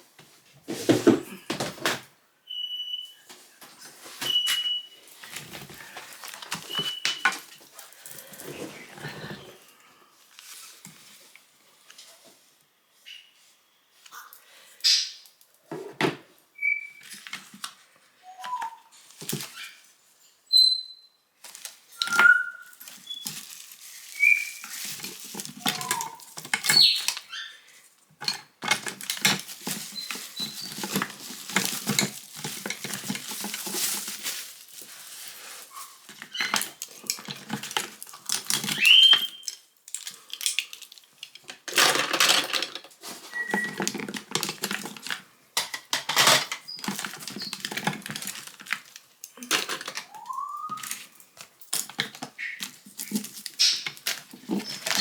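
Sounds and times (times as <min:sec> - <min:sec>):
high chirps or squeaks: 0:02.5 - 0:03.2, 0:06.7 - 0:07.3, 0:20.5 - 0:21.2, 0:25.6 - 0:27.6, 0:38.7 - 0:39.6, 0:50.0 - 0:50.9
clatter of small objects: 0:21.4 - 0:27.3, 0:28.2 - 0:55.0.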